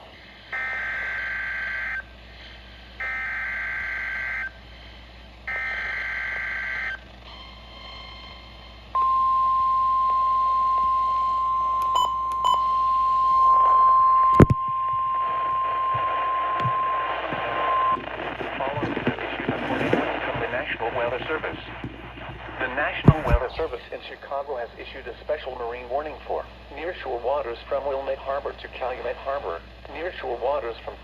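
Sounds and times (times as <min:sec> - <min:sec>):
steady warning alarm tone: 0:00.3 - 0:18.0.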